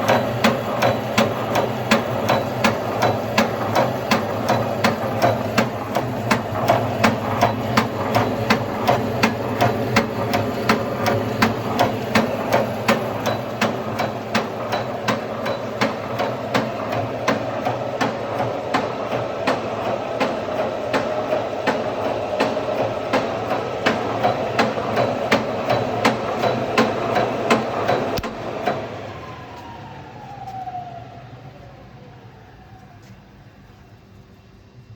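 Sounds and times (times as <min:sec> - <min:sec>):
sharp machine knocking: 0:00.0 - 0:28.9
machine hum: 0:00.0 - 0:32.6
machine whine running down: 0:26.9 - 0:33.6.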